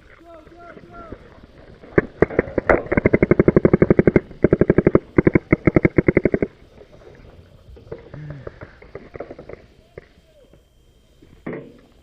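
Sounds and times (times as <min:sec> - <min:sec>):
paintball markers firing rapidly: 0:01.9 - 0:06.5.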